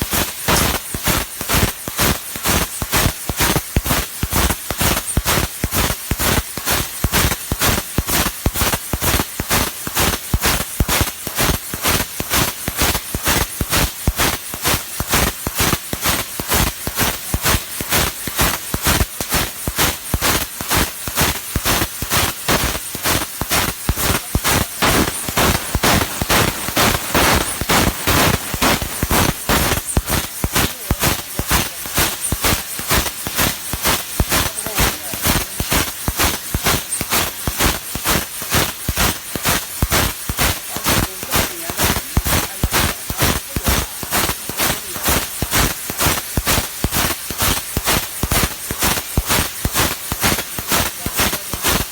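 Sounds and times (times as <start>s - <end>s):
rapid regular crackle: 0.0s - 51.9s
laser cutting jet hissing: 22.5s - 37.1s.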